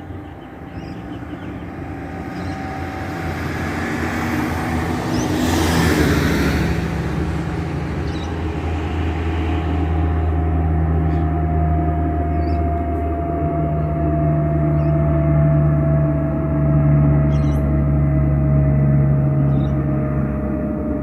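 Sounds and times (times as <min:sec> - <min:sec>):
turboprop plane climbing: 0:00.0 - 0:21.0.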